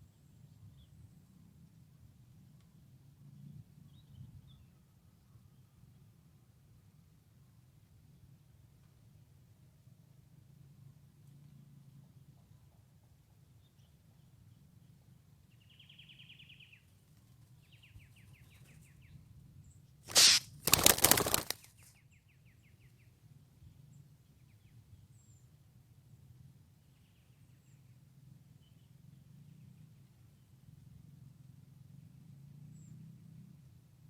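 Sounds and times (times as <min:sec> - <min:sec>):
bird trilling: 0:20.1 - 0:21.6
loud rushing rustling burst: 0:20.1 - 0:21.6.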